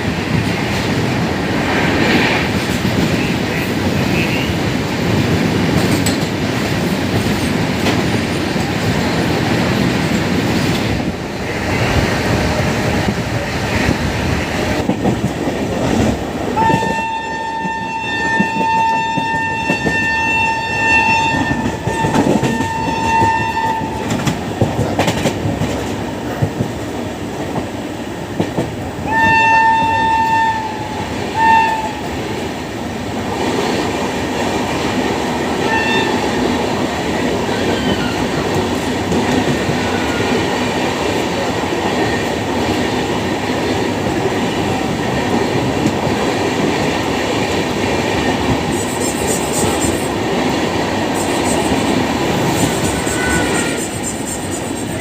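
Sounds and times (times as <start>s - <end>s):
train wheels clattering over rails: 0.0s - 29.4s, 31.1s - 55.0s
shrill locomotive horn: 16.6s - 24.1s, 29.1s - 32.1s, 35.6s - 36.4s, 52.6s - 55.0s.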